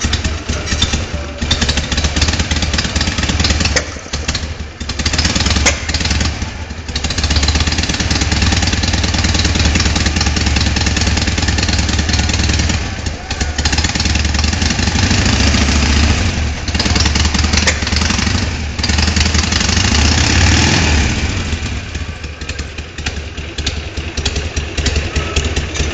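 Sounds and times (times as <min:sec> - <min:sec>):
motorcycle engine running: 0:00.0 - 0:25.9.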